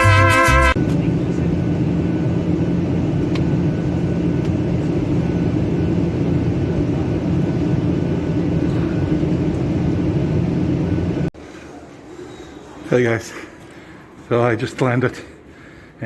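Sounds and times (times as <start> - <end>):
airliner engines droning: 0.7 - 11.4.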